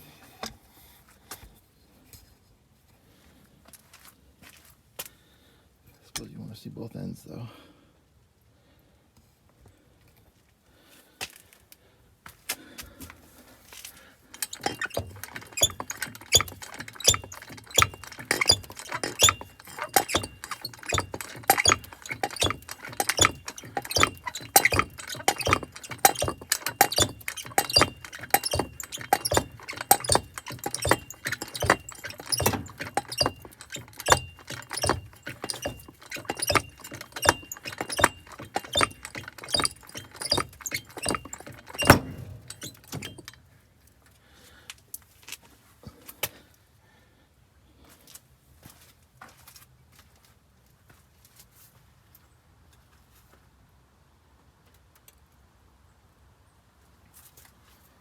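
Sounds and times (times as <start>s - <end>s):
metallic clicking and clinking: 14.3s - 43.4s.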